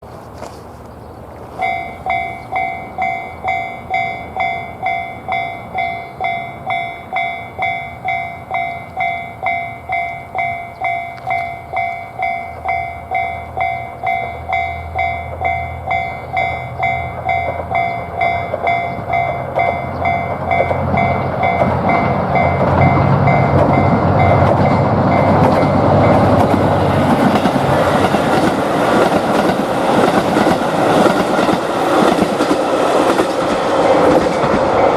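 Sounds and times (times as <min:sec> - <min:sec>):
train rumbling past: 0:00.0 - 0:34.9
level crossing alarm bell ringing: 0:01.6 - 0:26.9.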